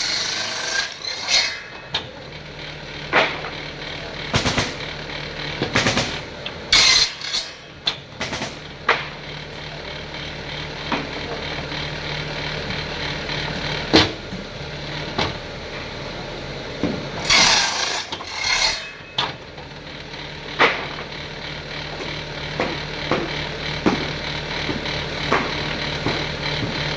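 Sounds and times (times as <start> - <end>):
tools scraping wood: 17.2 - 19.0.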